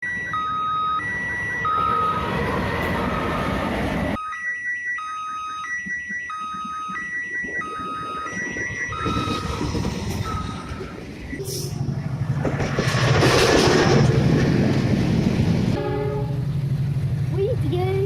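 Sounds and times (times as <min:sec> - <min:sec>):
level crossing two-tone alarm: 0:00.0 - 0:02.4, 0:04.2 - 0:11.4
loud rumble: 0:09.0 - 0:17.6.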